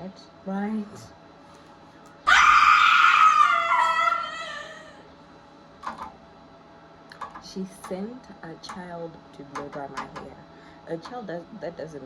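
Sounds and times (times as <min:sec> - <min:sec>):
woman screaming: 0:02.3 - 0:05.0.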